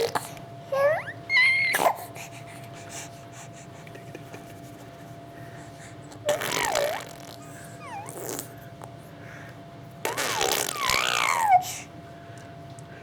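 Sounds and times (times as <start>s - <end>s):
baby vocalizing: 0.0s - 3.6s, 6.1s - 8.6s, 10.1s - 11.9s
faint steady hum: 0.0s - 13.0s.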